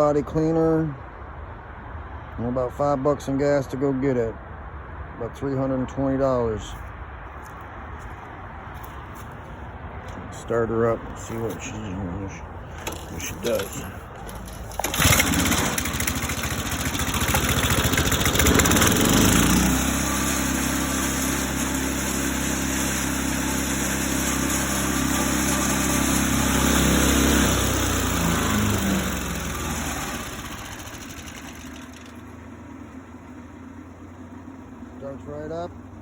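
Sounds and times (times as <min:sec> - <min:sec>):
small gasoline engine starting and running: 0:12.7 - 0:36.0.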